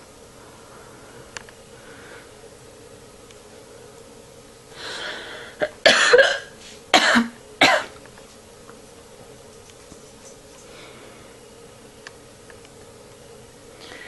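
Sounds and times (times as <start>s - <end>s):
person breathing: 0.4s - 2.4s, 4.7s - 5.6s, 10.6s - 11.4s, 13.8s - 14.0s.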